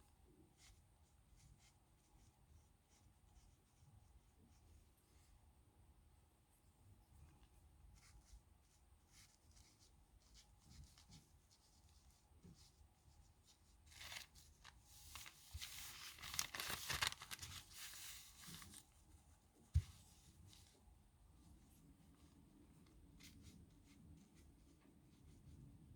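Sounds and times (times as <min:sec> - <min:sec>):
paper rustling: 0:13.8 - 0:19.0.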